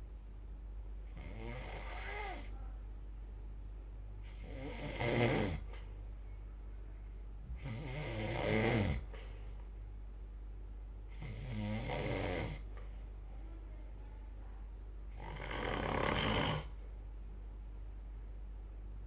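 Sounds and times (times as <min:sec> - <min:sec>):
person snoring: 0:01.1 - 0:02.5, 0:04.2 - 0:05.7, 0:07.5 - 0:09.1, 0:11.1 - 0:12.6, 0:15.1 - 0:16.8.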